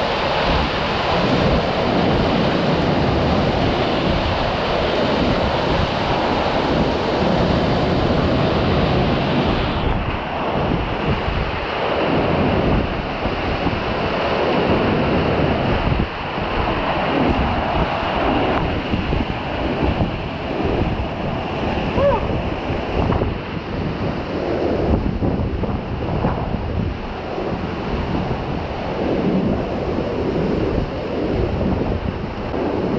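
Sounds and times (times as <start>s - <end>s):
water rushing: 0.0s - 24.3s
wind buffeting microphone: 0.0s - 32.9s.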